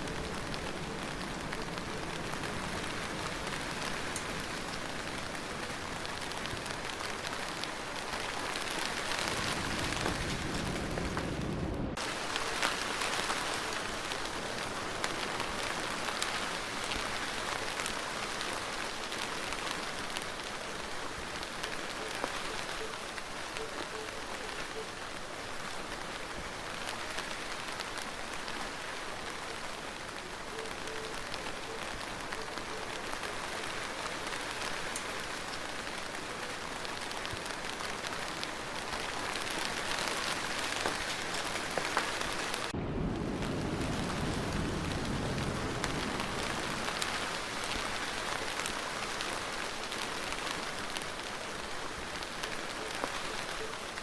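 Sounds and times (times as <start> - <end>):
steady rainfall: 0.0 - 54.0
low rumble: 9.7 - 12.0, 42.8 - 47.0.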